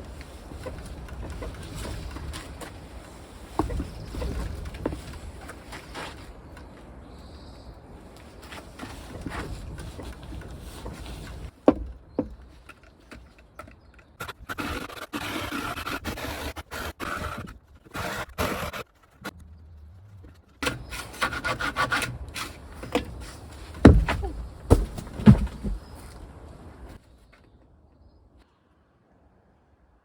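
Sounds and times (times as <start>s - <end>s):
wood scraping and rubbing: 8.4s - 26.2s
heavy thumps: 22.8s - 26.0s.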